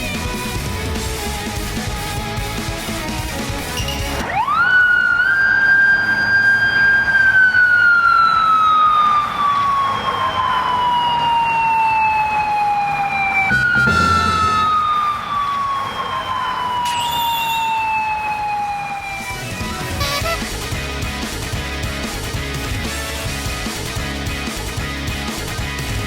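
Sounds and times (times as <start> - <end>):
motorcycle siren wailing: 4.0 - 20.8.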